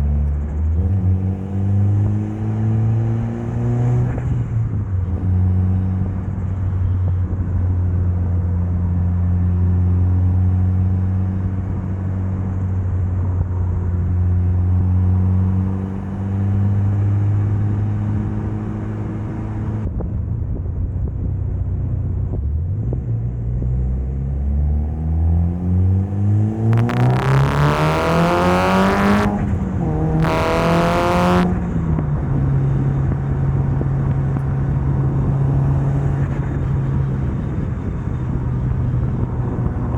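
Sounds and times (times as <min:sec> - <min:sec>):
car engine revving: 0:00.0 - 0:07.4, 0:22.8 - 0:39.9.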